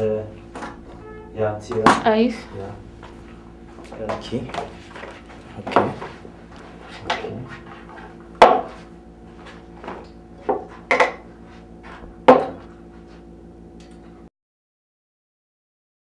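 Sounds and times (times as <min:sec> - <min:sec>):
steady low hum: 0:00.0 - 0:14.3
hard objects knocking and clunking: 0:03.0 - 0:06.3, 0:06.9 - 0:08.8, 0:09.8 - 0:11.3, 0:11.9 - 0:12.7.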